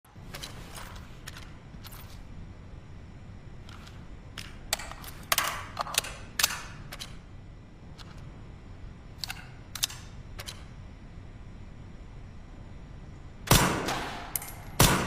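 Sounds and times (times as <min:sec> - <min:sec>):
suppressed rifle shots: 0:13.5 - 0:15.0.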